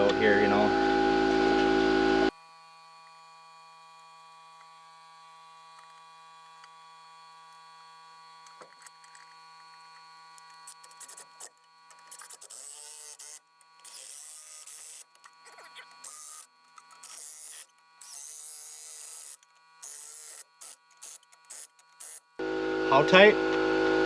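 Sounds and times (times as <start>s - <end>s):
electrical hum: 0.0s - 2.3s, 12.0s - 24.0s
small electric motor buzzing: 1.6s - 22.6s.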